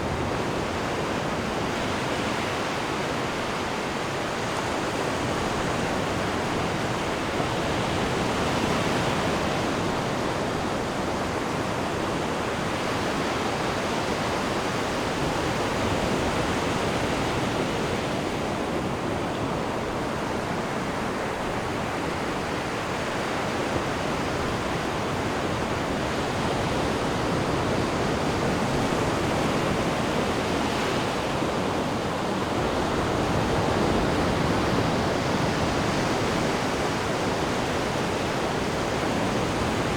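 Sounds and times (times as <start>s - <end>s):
ocean waves breaking on beach: 0.0s - 39.9s.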